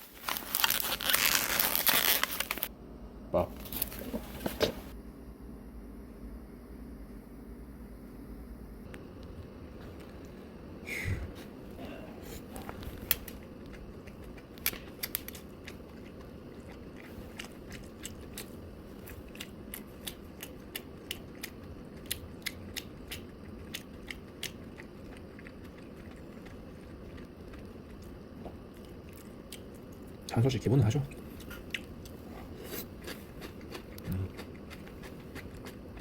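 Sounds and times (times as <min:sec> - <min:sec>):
steady low hum: 0:00.0 - 0:36.0
person chewing: 0:11.1 - 0:30.2, 0:31.1 - 0:36.0.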